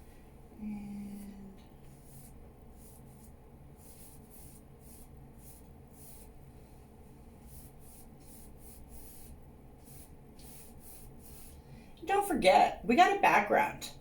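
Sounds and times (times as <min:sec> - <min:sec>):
low steady hum: 0:00.0 - 0:14.0
paintbrush swishing: 0:01.8 - 0:11.7.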